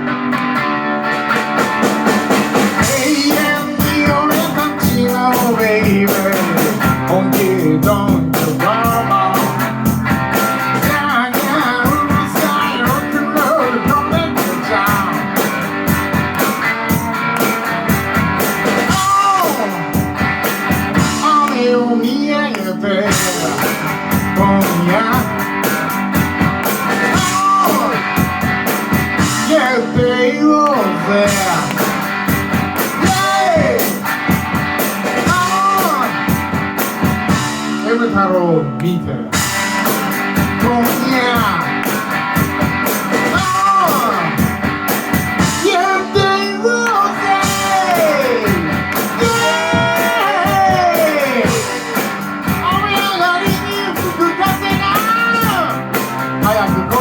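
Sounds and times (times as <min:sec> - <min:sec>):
lead guitar with bending notes: 0:00.0 - 0:57.0
rock and roll band playing: 0:00.0 - 0:57.0
steady drum beat: 0:01.0 - 0:38.4, 0:39.3 - 0:57.0
person singing: 0:02.7 - 0:10.0, 0:10.7 - 0:15.6, 0:16.4 - 0:25.7, 0:26.9 - 0:28.4, 0:29.1 - 0:32.0, 0:32.9 - 0:34.0, 0:35.1 - 0:36.4, 0:40.4 - 0:41.9, 0:43.1 - 0:44.6, 0:45.4 - 0:57.0
person shouting: 0:33.0 - 0:33.9, 0:45.8 - 0:55.7.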